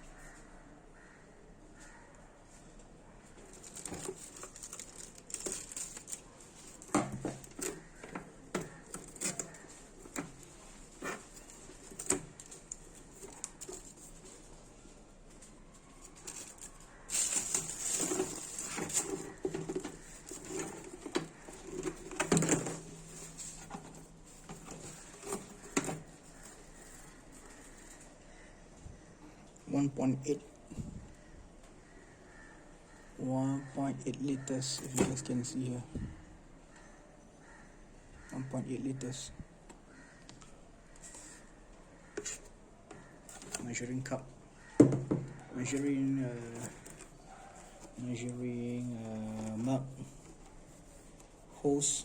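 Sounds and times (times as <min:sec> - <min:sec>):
packaging rustling: 0:03.4 - 0:28.2, 0:45.6 - 0:52.0
plastic parts knocking and clicking: 0:03.5 - 0:14.3, 0:16.2 - 0:28.0, 0:44.8 - 0:45.9.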